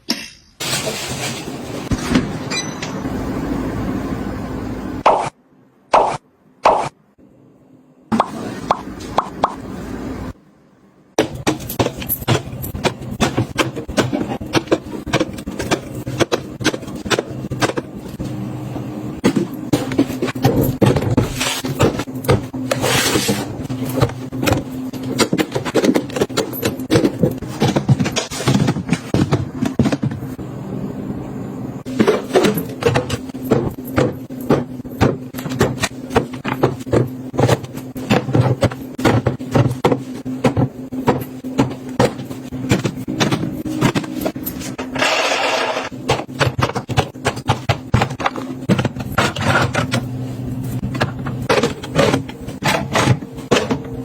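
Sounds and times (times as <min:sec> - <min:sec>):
steady low hum: 0:01.3 - 0:45.0
household items clicking and knocking: 0:11.2 - 0:18.4, 0:19.2 - 0:30.4, 0:31.9 - 0:50.2.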